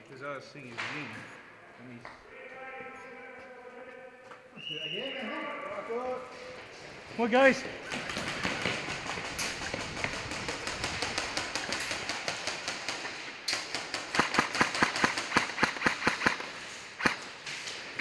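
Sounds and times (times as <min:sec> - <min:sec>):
airsoft gun shots: 0:08.4 - 0:17.2.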